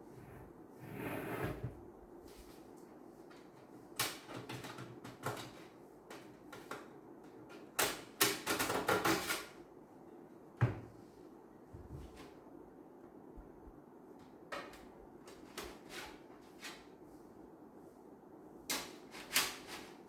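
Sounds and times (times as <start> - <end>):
computer parts knocking and clattering: 4.0 - 6.8, 7.7 - 9.5.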